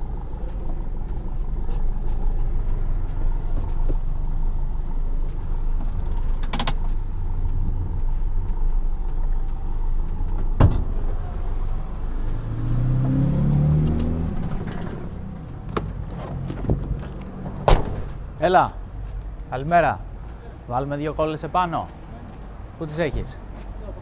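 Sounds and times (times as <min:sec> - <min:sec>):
vehicle engine running: 0:00.0 - 0:24.0
heavy thump: 0:10.6 - 0:11.1, 0:15.7 - 0:18.3.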